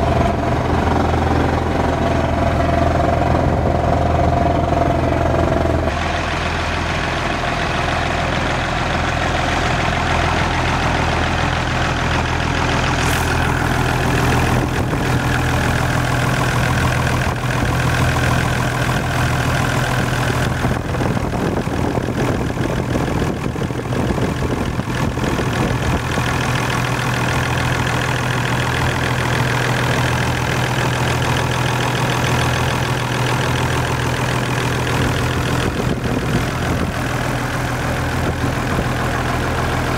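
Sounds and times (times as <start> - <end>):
drilling rig engine hum: 0.0 - 39.9.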